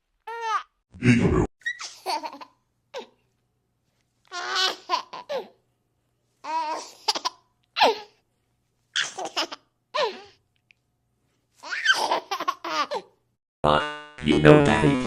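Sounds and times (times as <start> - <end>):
baby laughing: 0.3 - 0.7, 1.6 - 3.2, 4.3 - 5.6, 6.4 - 8.2, 9.0 - 10.4, 11.6 - 13.2.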